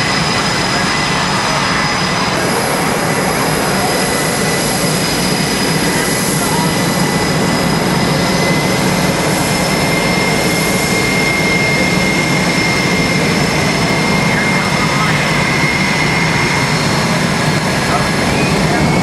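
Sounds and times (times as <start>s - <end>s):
crowd voices: 0.0s - 19.0s
jet engines running: 0.0s - 19.0s.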